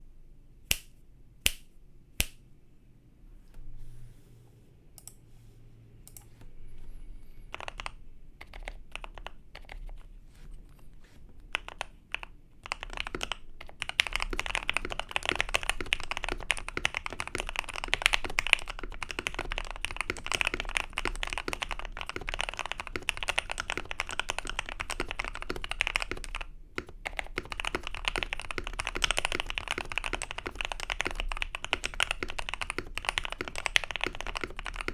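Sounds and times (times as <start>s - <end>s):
mechanical keyboard typing: 7.5s - 10.1s, 11.4s - 34.9s.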